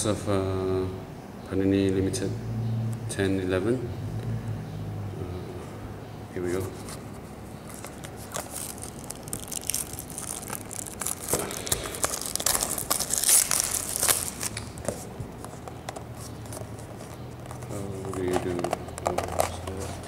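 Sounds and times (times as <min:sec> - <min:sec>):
plastic wrapping tearing and crinkling: 0:07.7 - 0:20.0.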